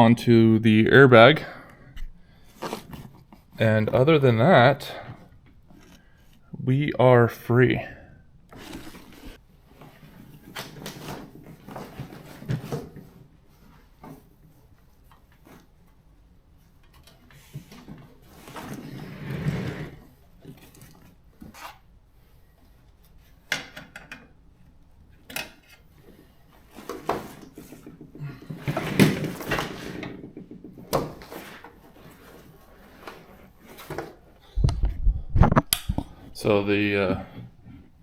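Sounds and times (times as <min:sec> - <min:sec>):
rubbing scrapes: 0:17.4 - 0:20.2.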